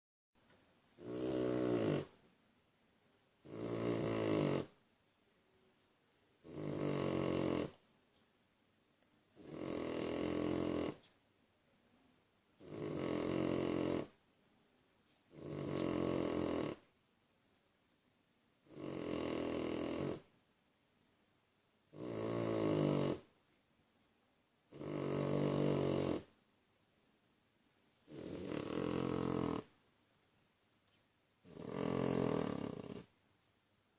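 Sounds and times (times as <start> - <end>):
quiet breaths: 0.4 - 33.9
buzzing snores: 1.0 - 2.2, 3.4 - 4.8, 6.4 - 7.8, 9.4 - 11.1, 12.6 - 14.2, 15.3 - 16.9, 18.6 - 20.3, 21.9 - 23.3, 24.7 - 26.3, 28.0 - 29.8, 31.4 - 33.1.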